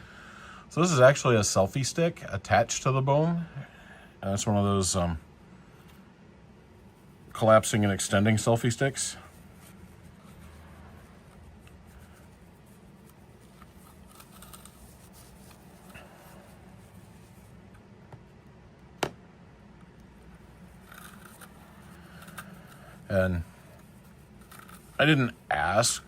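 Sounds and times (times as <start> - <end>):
steady low hum: 0.0 - 26.0
handling and scraping sounds: 6.8 - 18.3, 20.0 - 26.0.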